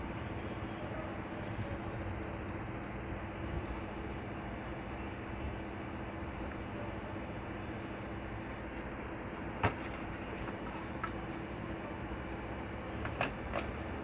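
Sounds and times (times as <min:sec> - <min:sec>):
faint electrical hum and hiss: 0:03.1 - 0:09.4, 0:10.0 - 0:14.0.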